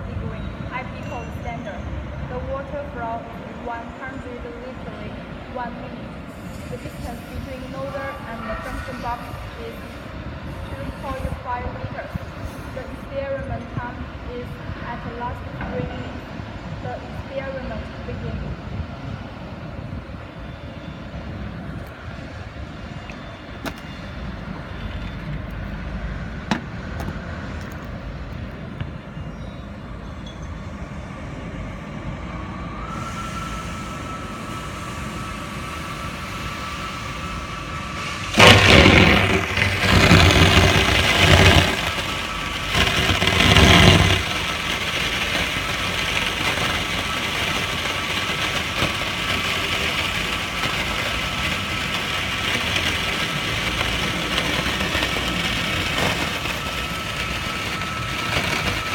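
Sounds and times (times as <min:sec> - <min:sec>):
pump running: 0:38.0 - 0:58.9
water jet spraying: 0:38.0 - 0:58.9.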